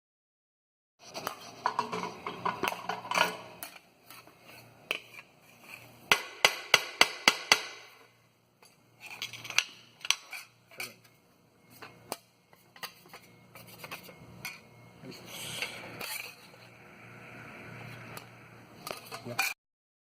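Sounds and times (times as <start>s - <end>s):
clicks and scrapes: 1.0s - 6.0s
sharp knocks on metal: 6.1s - 8.0s.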